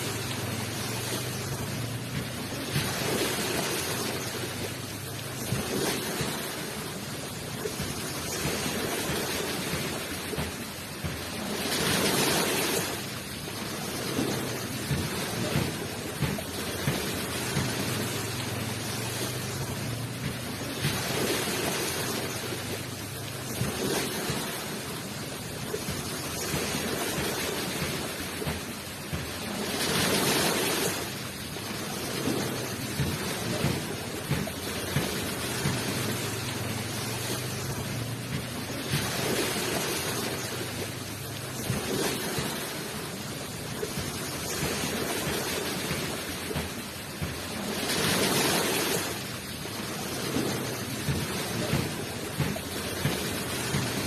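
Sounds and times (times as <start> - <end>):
ocean waves rushing up shore: 0.0 - 54.0.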